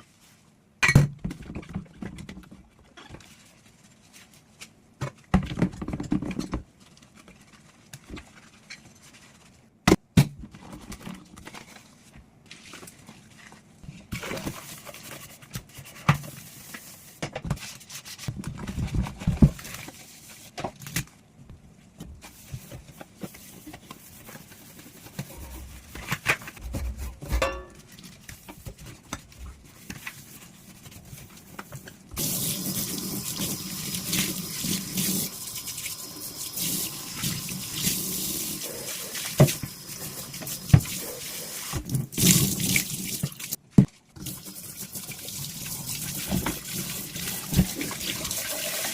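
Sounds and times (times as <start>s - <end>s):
dishes clinking: 27.3s - 27.8s
tap water running over dishes: 32.2s - 43.6s, 44.2s - 48.9s.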